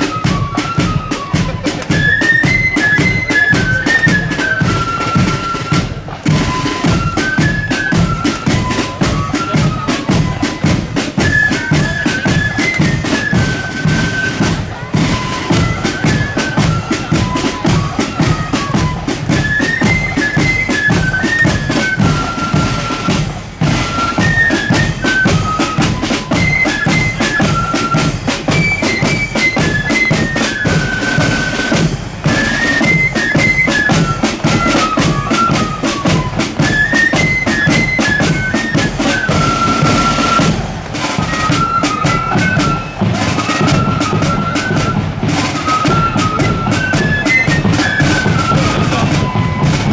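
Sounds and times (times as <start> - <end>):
marching band playing: 0.0 - 49.9.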